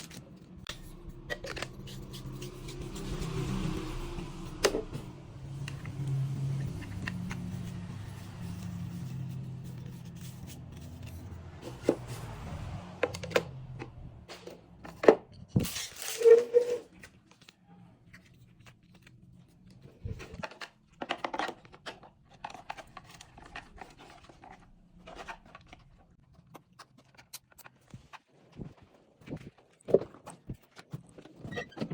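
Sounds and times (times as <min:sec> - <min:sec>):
low hum: 0:00.5 - 0:14.3
packaging rustling and tearing: 0:15.6 - 0:17.5.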